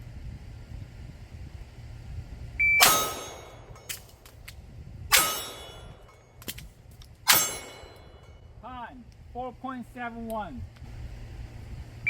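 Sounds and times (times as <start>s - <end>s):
shot timer beep: 2.6s - 3.6s
steel target ringing: 2.6s - 4.2s, 5.1s - 6.4s, 7.3s - 8.6s
pistol shots: 2.8s - 4.1s, 5.1s - 6.2s.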